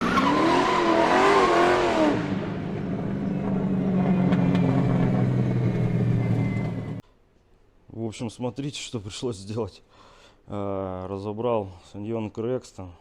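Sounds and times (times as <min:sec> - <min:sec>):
car engine revving and running: 0:00.0 - 0:07.0.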